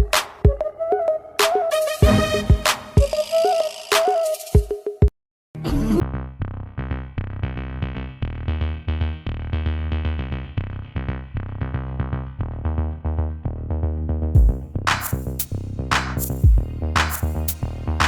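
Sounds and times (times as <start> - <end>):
drum machine beat: 0.0 - 0.6, 2.0 - 5.1, 14.4 - 17.7
low bass: 5.6 - 18.0.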